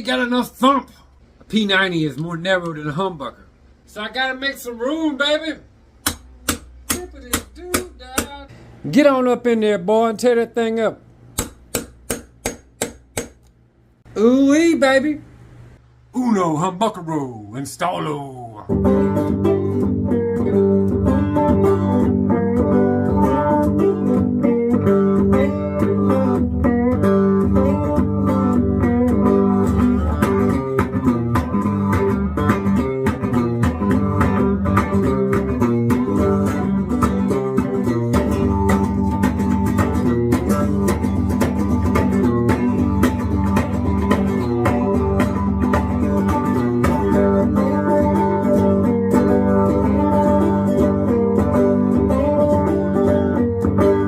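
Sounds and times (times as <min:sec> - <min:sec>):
bluesy guitar playing: 0:18.0 - 0:54.0.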